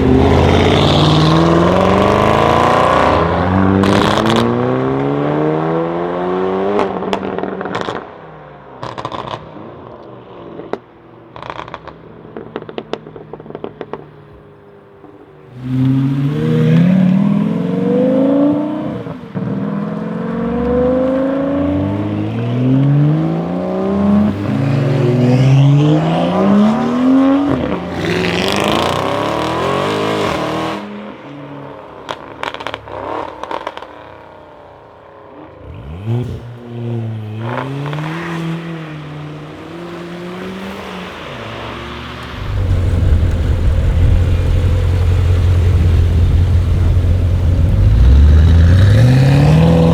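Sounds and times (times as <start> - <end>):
car engine accelerating: 0.0 - 8.2, 35.6 - 49.9
exhaust pops and crackles: 8.8 - 16.0, 32.0 - 34.3, 42.2 - 49.9
low engine drone: 42.3 - 49.7.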